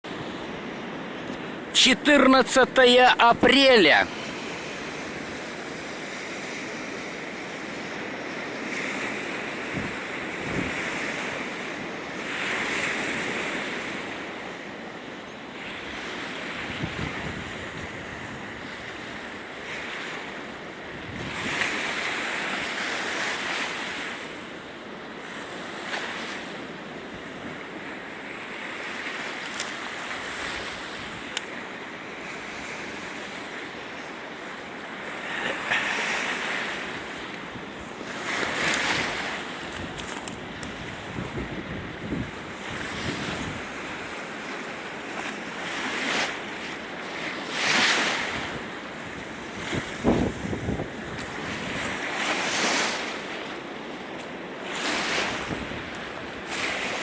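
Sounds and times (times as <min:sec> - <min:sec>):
strong gusty wind: 0:00.1 - 0:14.4, 0:15.6 - 0:23.3, 0:35.0 - 0:44.2, 0:47.5 - 0:52.7, 0:54.6 - 0:57.0.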